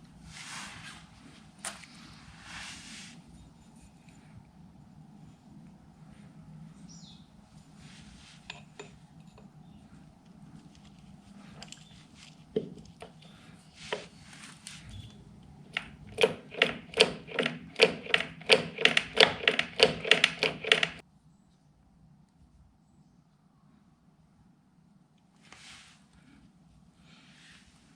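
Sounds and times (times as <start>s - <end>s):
metal parts clinking and scraping: 8.4s - 9.9s, 10.6s - 14.2s.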